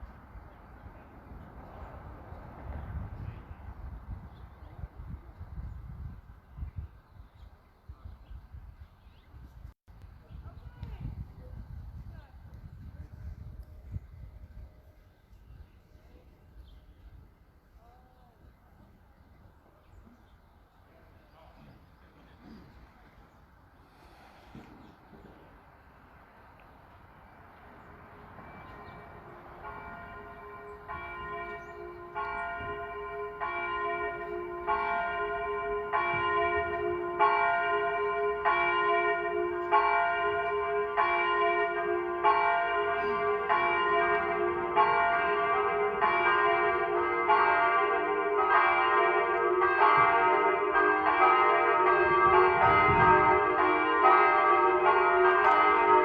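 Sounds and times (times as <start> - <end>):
church bells ringing: 28.0 - 56.0.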